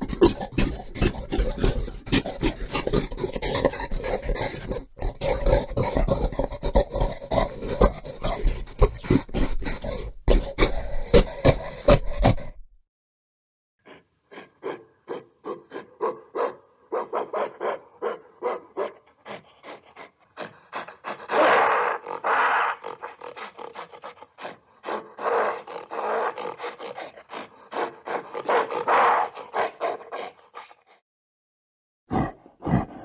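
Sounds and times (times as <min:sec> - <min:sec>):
gorilla hooting: 0:00.0 - 0:12.6, 0:18.6 - 0:29.5
gorilla roaring: 0:00.0 - 0:12.6, 0:13.9 - 0:31.0, 0:32.1 - 0:33.0.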